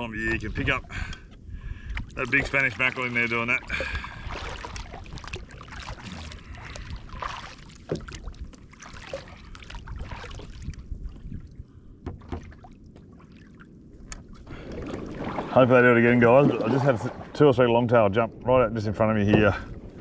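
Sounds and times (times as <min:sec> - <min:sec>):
water sloshing around kayak: 0:00.1 - 0:17.7
knocks on kayak: 0:12.0 - 0:12.5.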